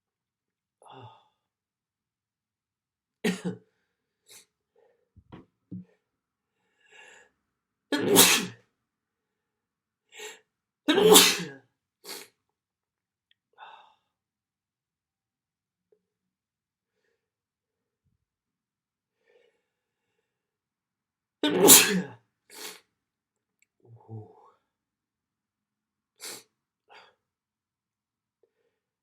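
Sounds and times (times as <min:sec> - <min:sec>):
person sneezing: 0:07.9 - 0:08.6, 0:10.9 - 0:12.3, 0:21.4 - 0:22.8.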